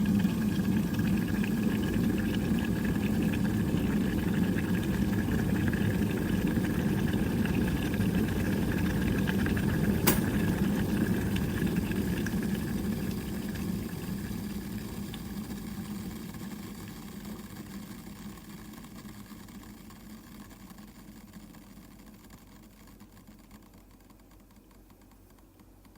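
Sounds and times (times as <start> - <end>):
kettle boiling: 0.0 - 25.9
kettle switch click: 10.0 - 10.4.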